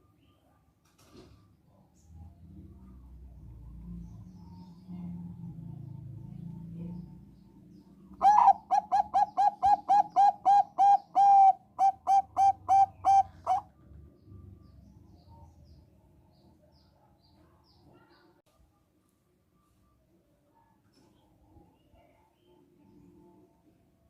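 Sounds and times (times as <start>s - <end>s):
dove cooing: 8.2s - 13.7s.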